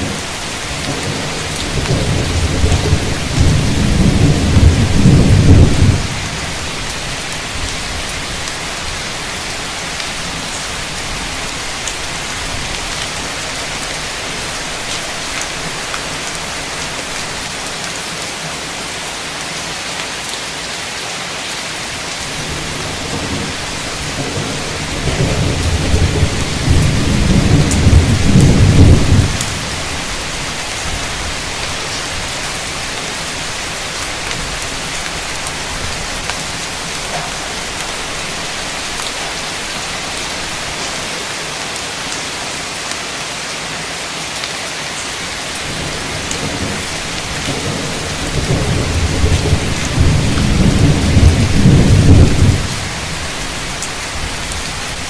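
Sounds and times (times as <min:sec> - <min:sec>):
thunder rumbling: 0:00.0 - 0:07.0, 0:22.3 - 0:31.4, 0:45.7 - 0:53.5
heavy rain falling: 0:00.0 - 0:55.0.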